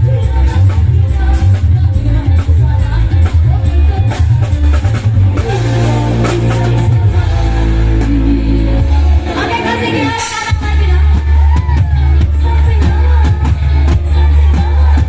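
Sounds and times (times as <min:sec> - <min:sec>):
heavy bass line: 0:00.0 - 0:15.0
steady drum beat: 0:00.0 - 0:15.0.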